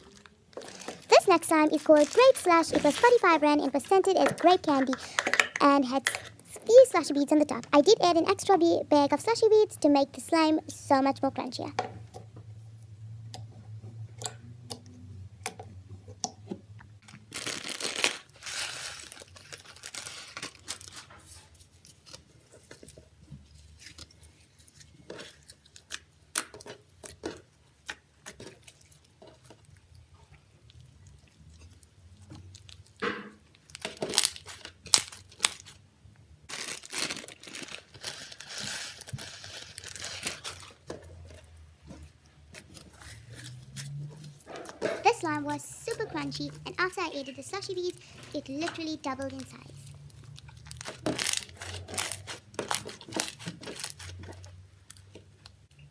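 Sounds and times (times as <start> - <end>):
crunchy slime being squeezed: 0.0 - 3.2.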